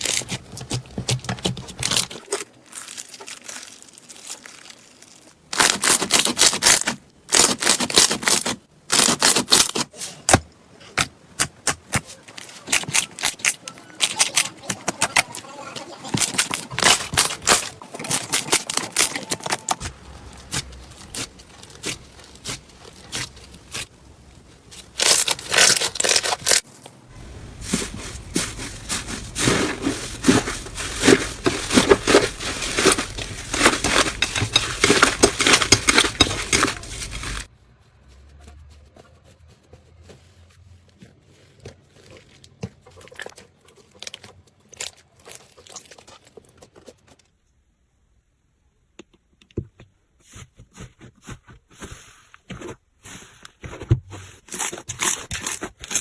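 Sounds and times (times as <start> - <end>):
slime squishing and crackling: 0.0 - 10.0, 11.8 - 37.5, 41.1 - 47.2.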